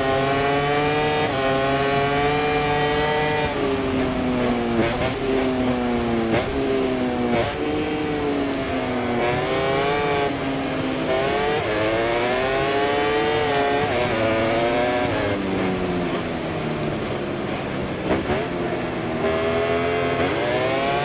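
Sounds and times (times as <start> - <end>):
racing motorcycle engine revving: 0.0 - 21.0.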